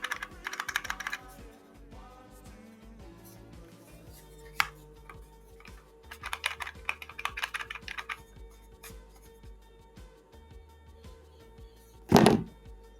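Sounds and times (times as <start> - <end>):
plastic buttons clicking: 0.0 - 1.2, 5.6 - 8.2
background music: 0.0 - 12.9.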